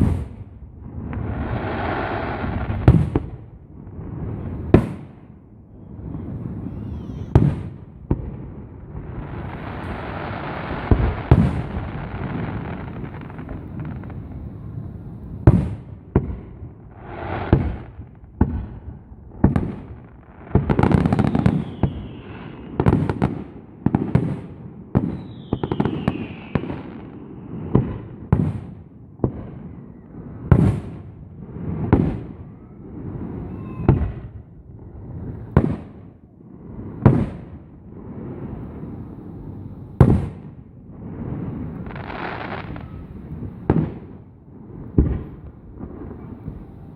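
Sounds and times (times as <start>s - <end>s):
aerial fireworks bursting: 0.0s - 46.9s
firework crackling: 0.0s - 46.9s
firework whistles: 1.0s - 3.3s, 5.7s - 7.9s, 9.0s - 16.3s, 19.4s - 28.6s, 31.6s - 36.0s, 41.0s - 44.2s, 44.9s - 46.9s.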